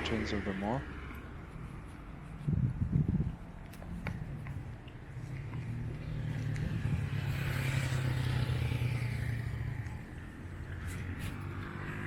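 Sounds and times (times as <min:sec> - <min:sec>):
vehicle driving past: 0:05.1 - 0:12.0.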